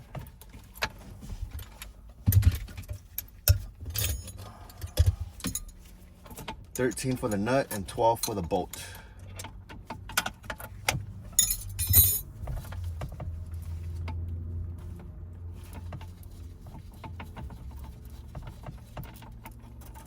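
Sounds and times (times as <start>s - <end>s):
metal tools clinking: 3.9s - 5.8s, 11.4s - 12.3s
low steady hum: 10.7s - 18.9s.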